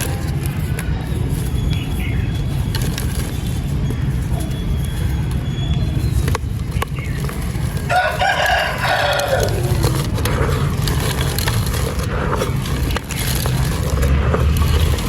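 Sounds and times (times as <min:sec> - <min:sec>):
gritty crunching of crumbling pot: 0:00.0 - 0:15.0
rooster crowing: 0:07.9 - 0:10.1.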